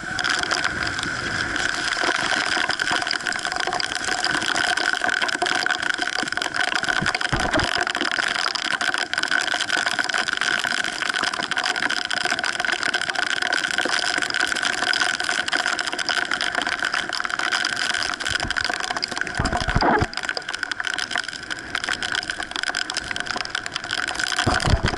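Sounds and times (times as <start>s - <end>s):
rushing wind and water: 18.2s - 20.3s, 22.9s - 24.9s.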